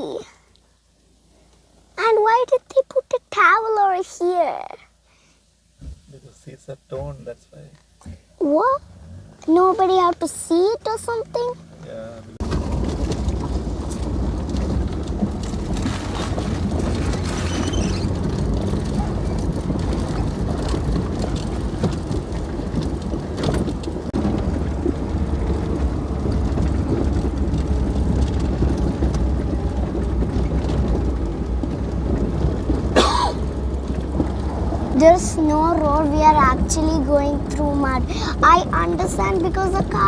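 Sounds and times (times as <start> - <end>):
car engine and road rumble: 0.0 - 40.0
car body knocks and rattles: 12.4 - 35.0.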